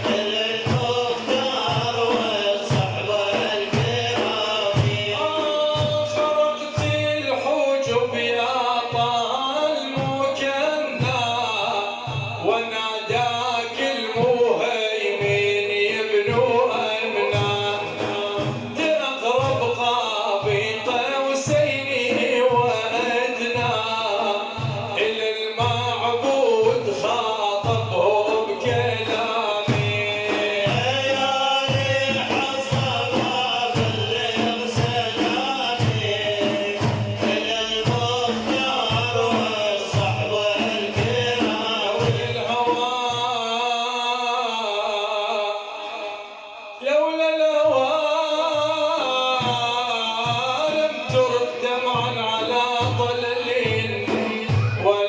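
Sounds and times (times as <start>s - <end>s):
low drum beat: 0.0s - 8.2s, 15.2s - 43.2s, 48.6s - 55.0s
voices singing: 0.0s - 47.1s, 47.7s - 55.0s.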